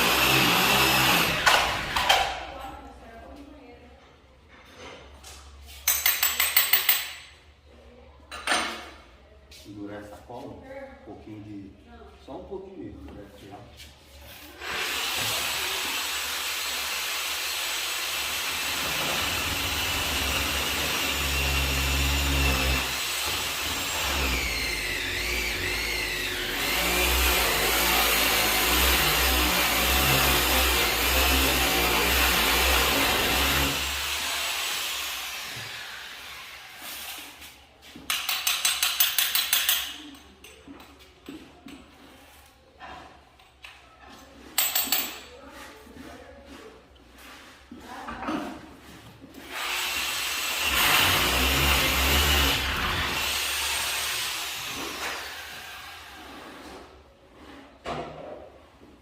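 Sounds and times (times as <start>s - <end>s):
electric power tool running: 0.0s - 2.1s, 14.6s - 36.6s, 49.5s - 55.9s.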